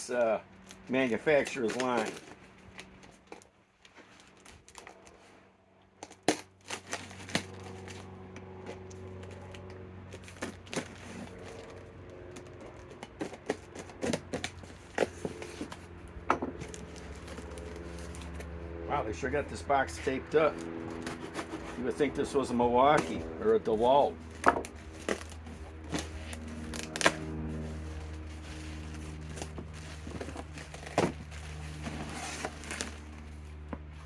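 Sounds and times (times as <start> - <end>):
steady low hum: 0.0 - 34.0
packing tape cut and pulled: 0.6 - 3.5, 6.0 - 15.8, 16.6 - 18.5, 20.0 - 22.2, 22.8 - 34.0
cardboard box being handled: 24.3 - 34.0.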